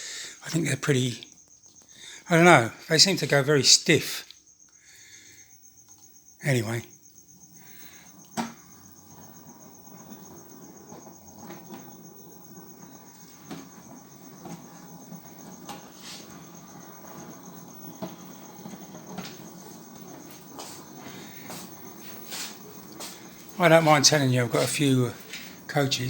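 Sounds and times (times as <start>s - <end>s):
wheels clicking over rail joints: 7.4s - 26.0s
model train wheels rumbling: 7.5s - 26.0s.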